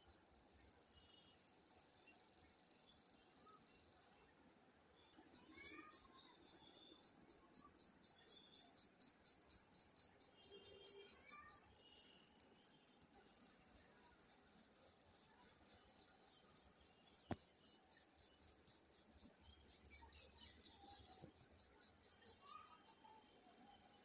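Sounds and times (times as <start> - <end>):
cricket chirping: 0.0 - 24.0.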